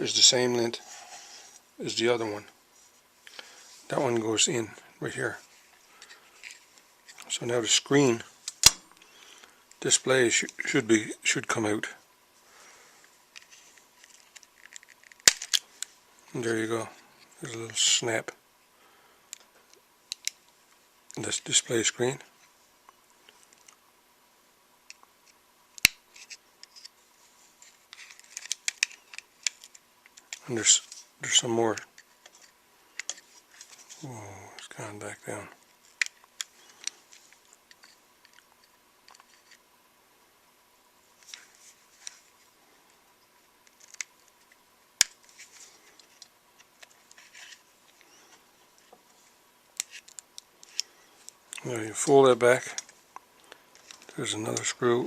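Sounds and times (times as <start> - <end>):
small plastic parts clicking: 13.3 - 15.9, 20.1 - 20.5, 27.9 - 31.0, 31.7 - 33.9, 43.6 - 48.1, 49.7 - 51.4.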